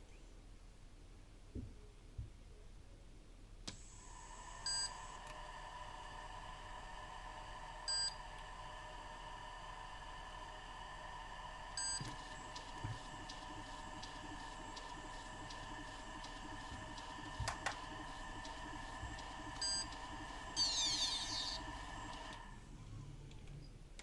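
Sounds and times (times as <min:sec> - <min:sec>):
high electronic whine: 0:20.6 - 0:21.6.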